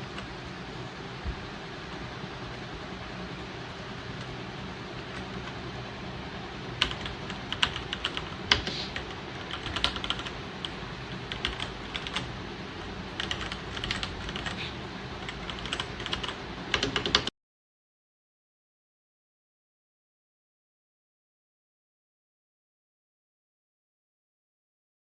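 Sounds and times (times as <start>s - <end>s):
steady low hum: 0.0s - 17.3s
mechanical keyboard typing: 6.8s - 17.3s.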